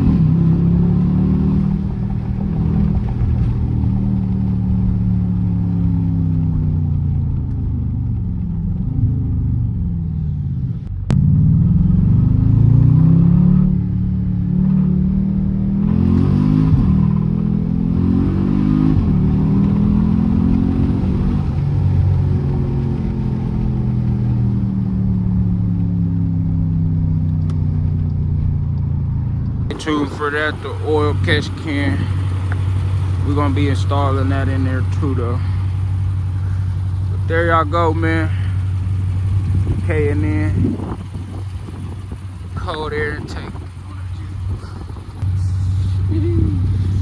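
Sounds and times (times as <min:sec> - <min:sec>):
car engine revving: 0:00.0 - 0:47.0.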